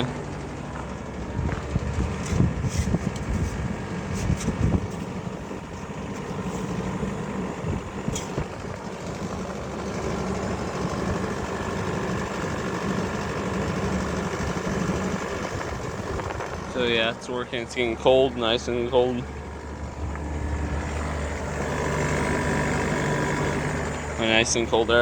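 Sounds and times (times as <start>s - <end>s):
window air conditioner humming: 0.0s - 25.0s.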